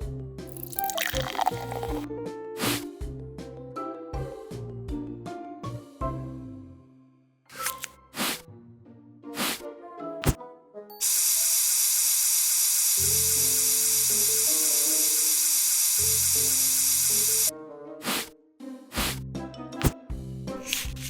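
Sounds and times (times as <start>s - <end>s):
loud spray hiss: 11.0s - 17.5s
light background music: 17.3s - 21.0s.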